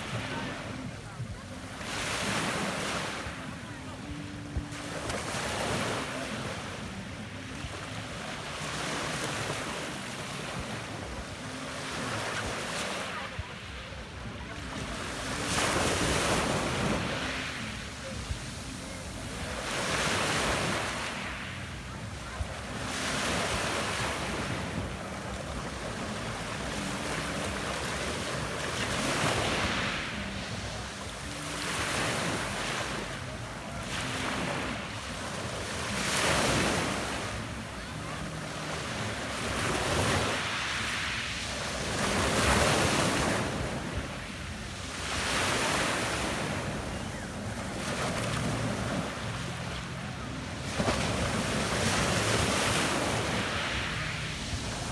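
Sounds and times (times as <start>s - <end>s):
waves washing up pebble beach: 50.7s - 54.9s.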